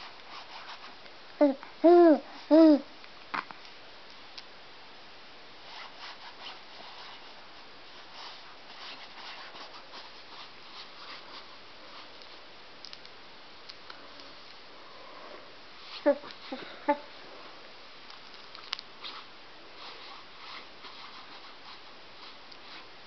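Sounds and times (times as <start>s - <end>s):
faint rustling and scratching: 0.0s - 2.7s, 5.6s - 13.0s, 13.8s - 23.0s.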